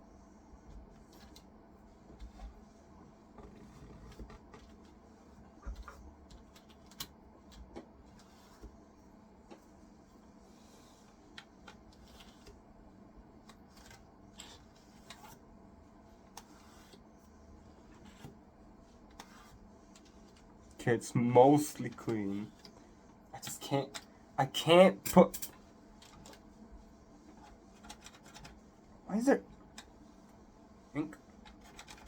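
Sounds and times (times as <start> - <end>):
low steady hum: 0.0 - 32.0
small clicks and light scraping: 3.4 - 8.7, 10.6 - 12.6, 13.4 - 15.4, 19.1 - 20.5, 25.2 - 26.6, 27.2 - 28.8, 31.2 - 32.0.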